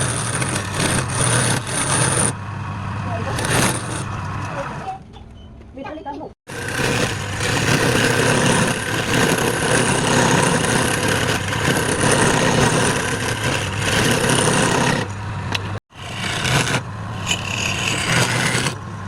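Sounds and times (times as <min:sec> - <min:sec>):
wood lathe running: 0:00.0 - 0:02.4, 0:03.3 - 0:04.2, 0:06.5 - 0:19.0.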